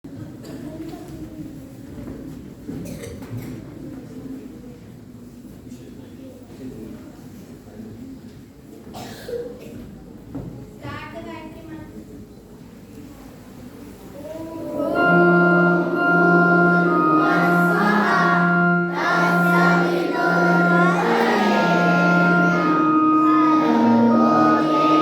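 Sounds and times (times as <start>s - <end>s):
held instrumental notes: 14.2s - 25.0s
children singing: 14.4s - 25.0s.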